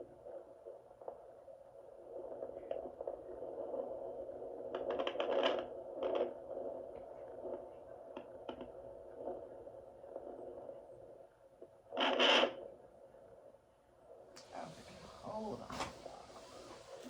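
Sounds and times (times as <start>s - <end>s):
static-like hiss from speaker: 0.0s - 17.0s
scratchy crackles: 2.0s - 10.9s.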